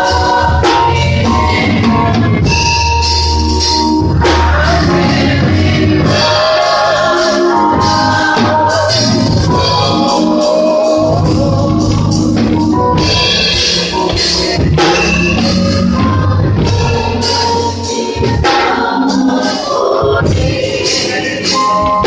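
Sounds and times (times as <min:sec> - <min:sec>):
drums: 0:00.0 - 0:22.0
live gospel music with singing: 0:00.0 - 0:22.0.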